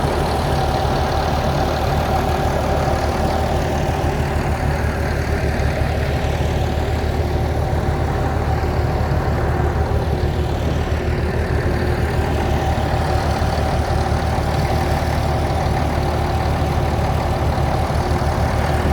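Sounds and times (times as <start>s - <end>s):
drilling rig engine drone: 0.0s - 18.9s.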